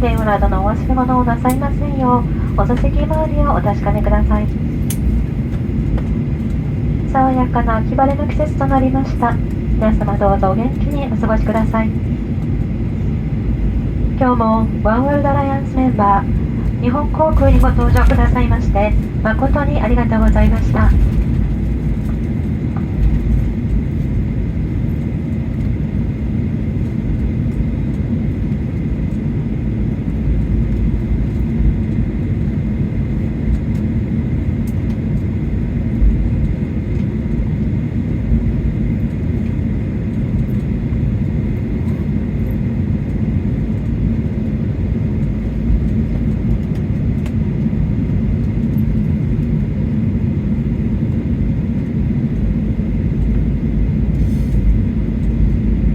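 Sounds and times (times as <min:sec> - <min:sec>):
faint steady whine: 0:00.0 - 0:25.6
low rumble of jet engines idling: 0:00.0 - 0:55.9.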